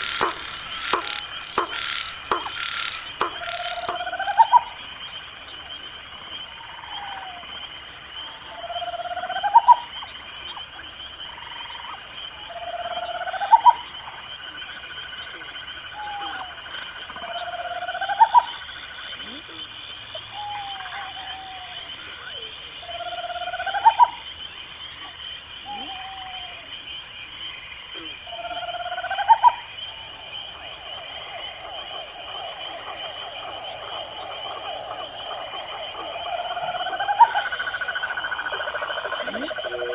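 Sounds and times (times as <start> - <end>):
faint regular ticking: 0.0 - 4.1
crickets trilling: 0.0 - 39.9.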